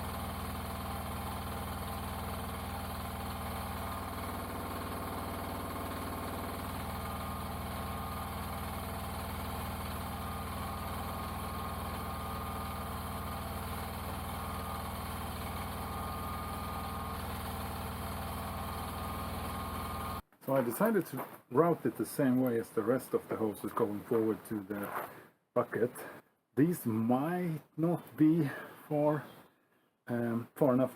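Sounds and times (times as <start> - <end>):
excavator engine running steadily: 0.0 - 21.2.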